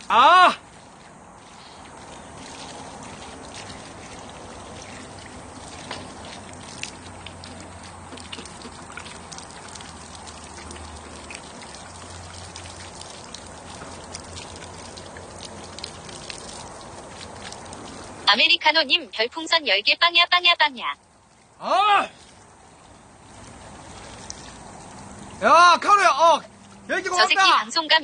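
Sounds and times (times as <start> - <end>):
shower water running and splashing: 0.0 - 18.7
water dripping: 0.0 - 28.0.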